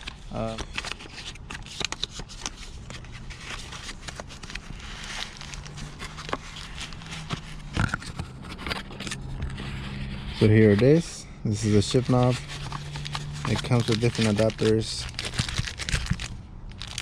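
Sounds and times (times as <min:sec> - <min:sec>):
packaging rustling and clicks: 0:00.0 - 0:10.0, 0:11.8 - 0:17.0.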